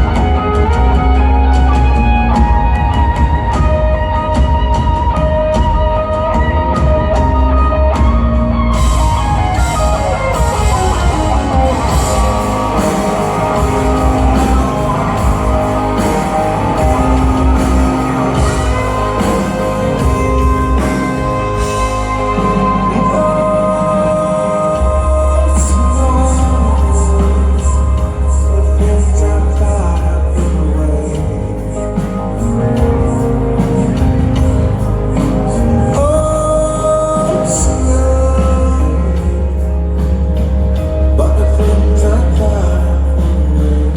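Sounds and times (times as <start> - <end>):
guitar downward pitch slide: 0.0 - 29.9
cymbals keeping a beat: 0.0 - 43.9
live rock band playing: 0.0 - 43.9.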